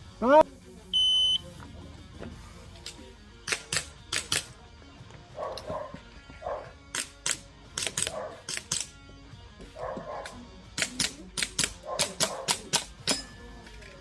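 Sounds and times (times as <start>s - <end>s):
airsoft gun shots: 3.5s - 4.5s, 6.9s - 8.9s, 10.8s - 13.2s
dog barking: 5.4s - 6.8s, 7.9s - 8.5s, 9.8s - 10.5s, 11.8s - 12.7s.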